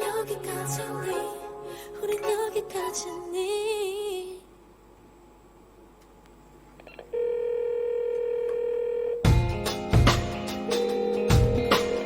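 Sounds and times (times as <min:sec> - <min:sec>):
pop music with drum hits: 0:00.0 - 0:03.1, 0:09.3 - 0:12.0
telephone dial tone: 0:07.2 - 0:09.2.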